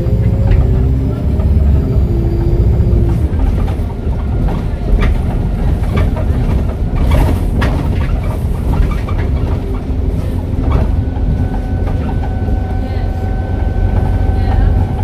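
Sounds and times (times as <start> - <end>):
bus engine and road rumble: 0.0 - 15.0
knocks and rattles: 2.8 - 12.4.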